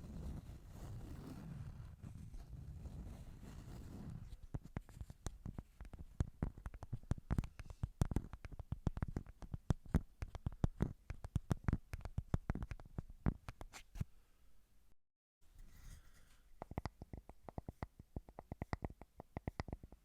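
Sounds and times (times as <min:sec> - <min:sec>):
rapid irregular tapping: 0:04.3 - 0:13.8, 0:16.6 - 0:20.0.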